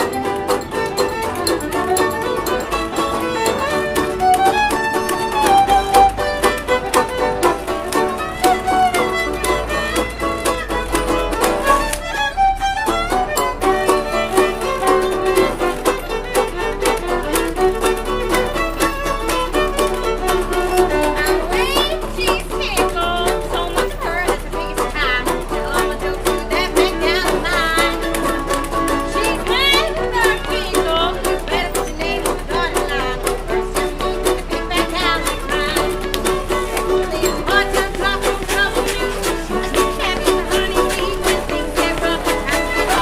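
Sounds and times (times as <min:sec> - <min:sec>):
fiddle playing sliding notes: 0:00.0 - 0:43.0
string band rhythmic accompaniment: 0:00.0 - 0:43.0.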